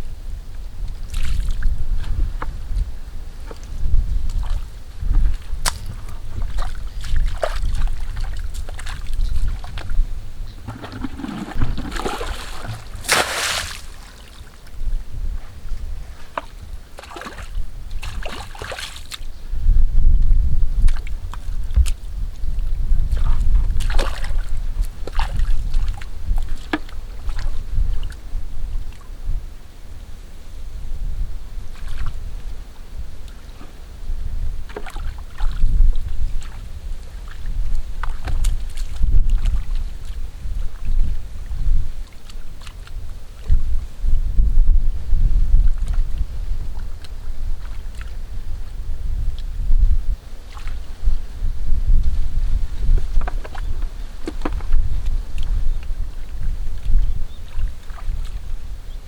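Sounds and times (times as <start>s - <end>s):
wind rumble on microphone: 0.0s - 59.0s
splashing in muddy water: 1.0s - 1.7s, 3.6s - 14.7s, 16.3s - 19.4s, 23.0s - 28.2s, 34.6s - 41.2s, 50.3s - 58.5s.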